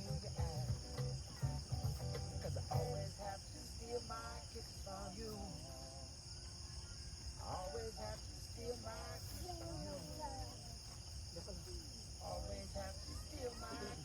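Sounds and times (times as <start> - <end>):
crickets chirping: 0.0 - 14.0
faint voices talking: 3.3 - 14.0.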